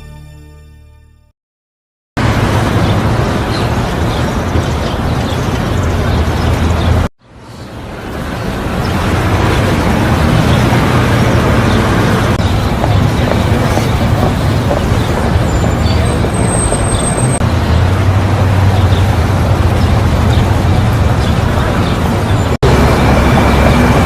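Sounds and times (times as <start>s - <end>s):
road traffic noise: 2.2s - 24.0s.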